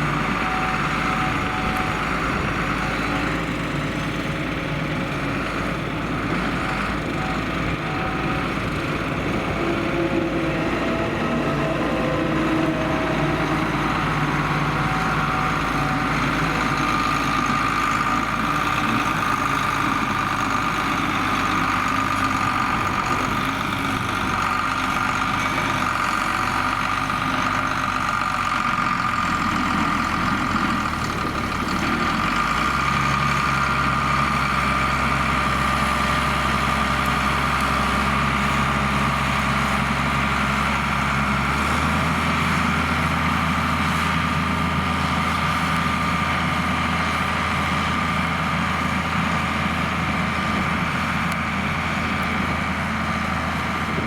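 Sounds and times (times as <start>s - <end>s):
tractor diesel engine running: 0.0s - 54.0s.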